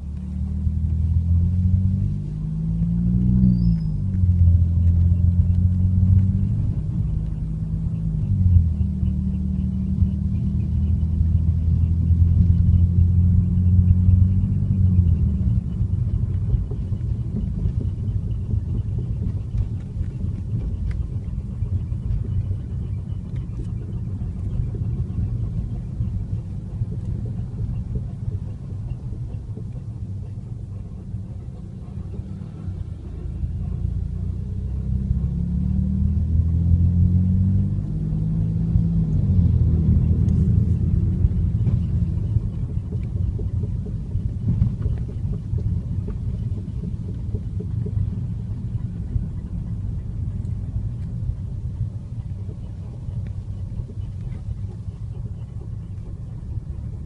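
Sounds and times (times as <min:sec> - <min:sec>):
car engine droning hum: 0:00.0 - 0:57.0
low rumble: 0:00.0 - 0:57.0.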